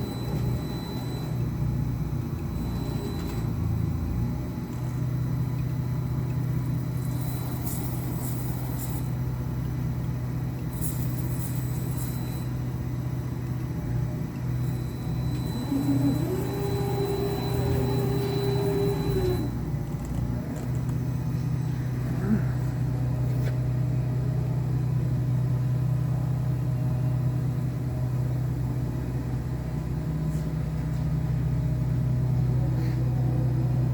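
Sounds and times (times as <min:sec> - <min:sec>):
faint high whine: 0:00.0 - 0:19.8
higher machine tone: 0:00.0 - 0:23.2
grinding machine hum: 0:00.0 - 0:30.2.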